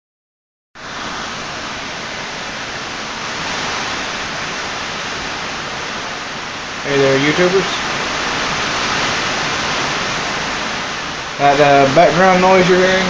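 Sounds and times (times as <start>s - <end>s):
hard driving rain: 0.8s - 13.0s.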